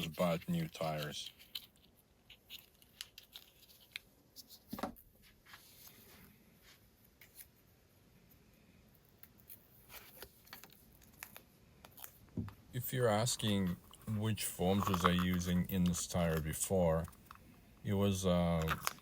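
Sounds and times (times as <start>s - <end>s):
hand-handling clicks and rustles: 0.0s - 5.0s, 9.0s - 19.0s.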